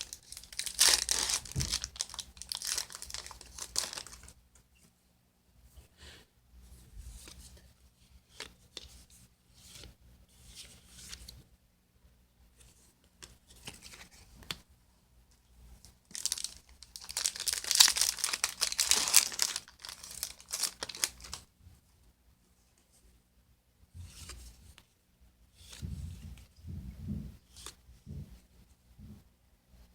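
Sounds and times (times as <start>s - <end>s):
foil wrapper crinkling: 0.0s - 4.3s, 16.1s - 21.4s
foil wrapper tearing: 0.0s - 4.3s, 16.1s - 21.4s.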